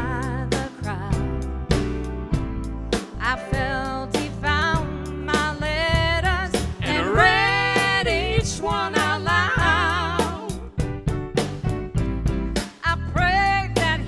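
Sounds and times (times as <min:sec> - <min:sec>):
live band with bass and drums: 0:00.0 - 0:14.0
person singing with vibrato: 0:06.8 - 0:10.6.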